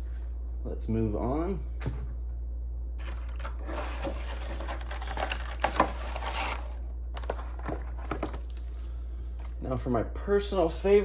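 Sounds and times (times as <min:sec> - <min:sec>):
steady low hum: 0:00.0 - 0:11.0
packaging rustling: 0:03.0 - 0:09.6.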